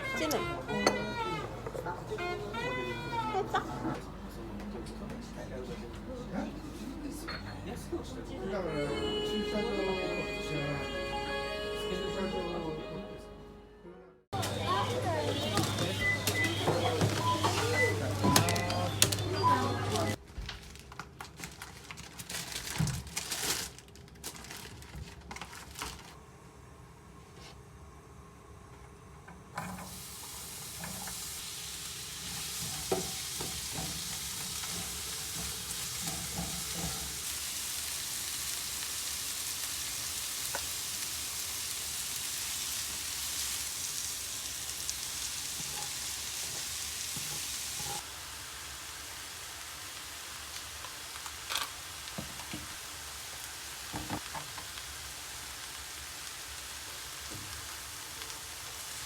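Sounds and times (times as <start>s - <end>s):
food sizzling on a griddle: 14.4s - 20.2s, 29.7s - 59.0s.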